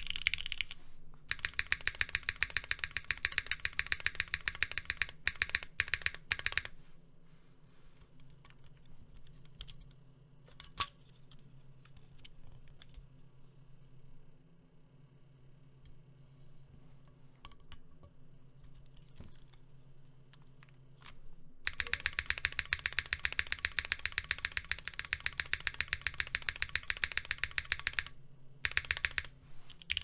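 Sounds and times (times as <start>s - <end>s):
single keyboard clicks: 0.0s - 6.7s, 21.7s - 30.0s
fast typing on mechanical keyboard: 0.0s - 6.8s, 21.7s - 30.0s.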